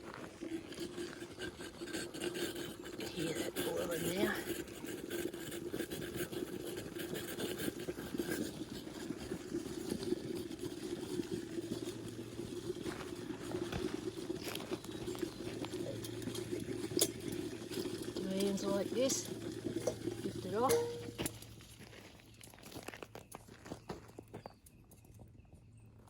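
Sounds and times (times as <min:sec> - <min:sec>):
kettle water bubbling: 0:00.0 - 0:22.2
low steady hum: 0:11.8 - 0:21.7.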